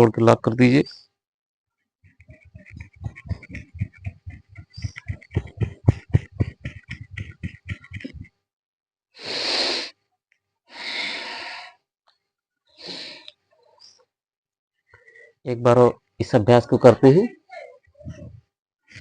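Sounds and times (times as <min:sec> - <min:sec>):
rapid forceful nose breaths: 0:02.0 - 0:08.3
long deep breaths: 0:10.7 - 0:11.9.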